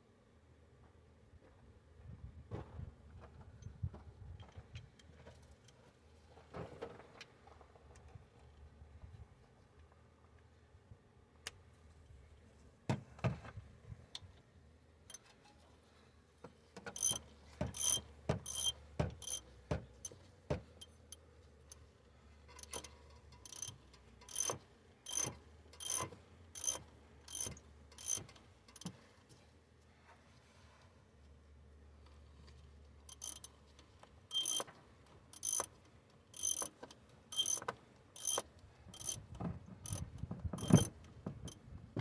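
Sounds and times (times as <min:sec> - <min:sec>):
ratchet wrench clicking: 0:16.9 - 0:20.2, 0:22.5 - 0:29.0, 0:33.1 - 0:33.6, 0:34.3 - 0:34.7, 0:35.3 - 0:40.9.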